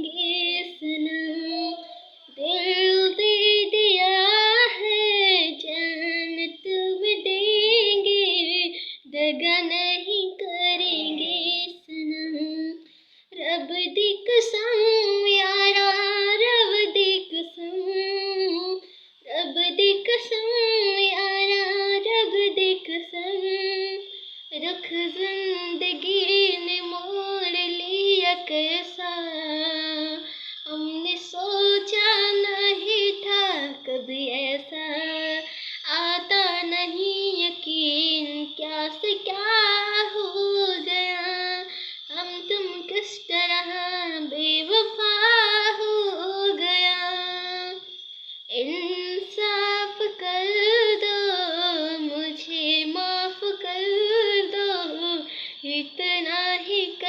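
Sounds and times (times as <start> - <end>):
boy singing unaccompanied: 0.0 - 47.9, 48.5 - 57.0
breaths: 8.7 - 9.1, 12.8 - 13.4, 18.8 - 19.3, 24.0 - 24.6, 30.2 - 30.7, 35.4 - 35.9, 41.6 - 42.1, 48.0 - 48.5, 55.2 - 55.7.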